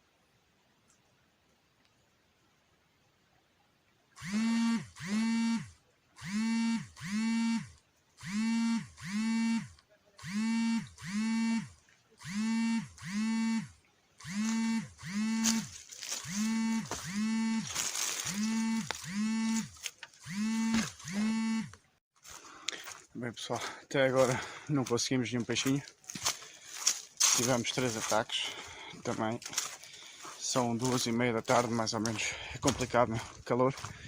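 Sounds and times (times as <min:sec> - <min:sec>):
electronic tones: 0:12.3 - 0:21.7.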